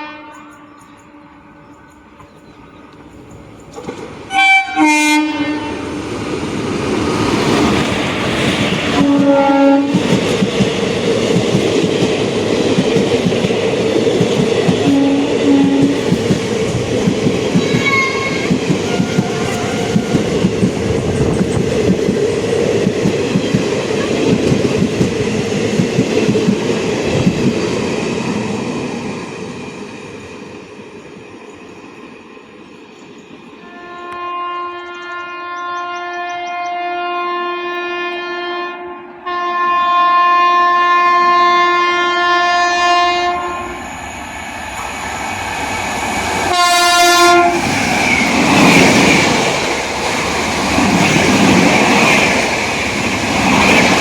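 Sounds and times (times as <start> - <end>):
train horn blasts: 0.0 - 2.0, 4.3 - 5.9, 8.9 - 10.1, 14.8 - 16.1, 17.6 - 20.2, 33.6 - 43.8, 46.5 - 47.7
train passing with rumble: 0.0 - 54.0
wheels clacking over rail joints: 2.2 - 4.3.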